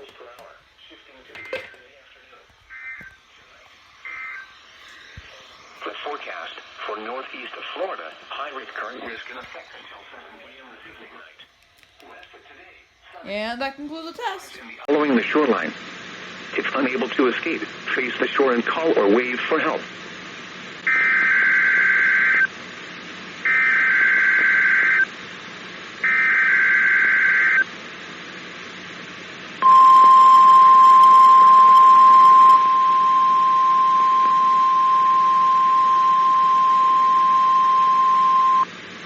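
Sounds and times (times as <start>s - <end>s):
steady warning alarm tone: 29.6s - 38.7s.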